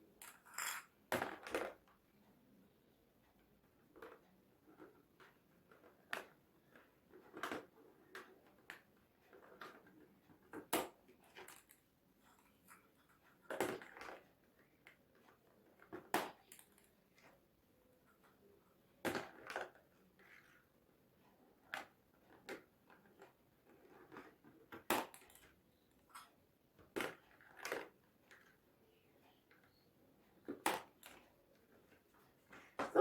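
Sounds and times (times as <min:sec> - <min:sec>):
handling noise: 0:32.6 - 0:33.0.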